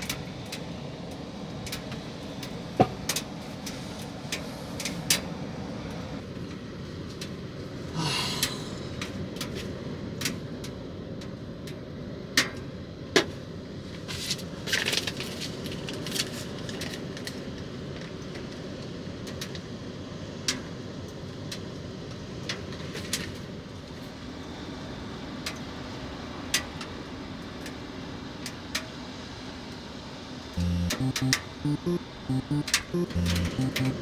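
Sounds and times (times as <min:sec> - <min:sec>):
sharp clicks and taps: 0:30.6 - 0:34.0.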